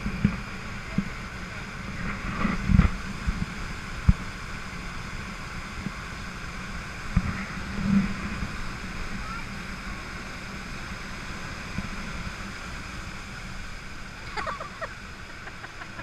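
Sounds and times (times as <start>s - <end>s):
motorboat motor hum: 0.0s - 16.0s
water rushing: 0.0s - 16.0s.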